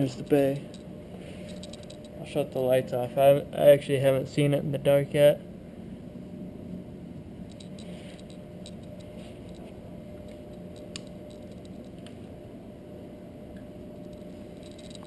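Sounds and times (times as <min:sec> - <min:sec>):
computer fans whirring: 0:00.0 - 0:15.0
faint steady tone: 0:00.0 - 0:15.0
light clicks and scratches: 0:07.5 - 0:12.2.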